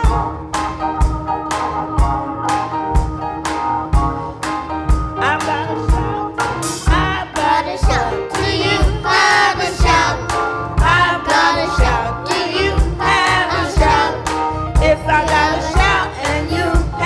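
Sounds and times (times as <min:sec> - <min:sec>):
steady drum beat: 0:00.0 - 0:17.0
voices singing over a band: 0:06.8 - 0:17.0.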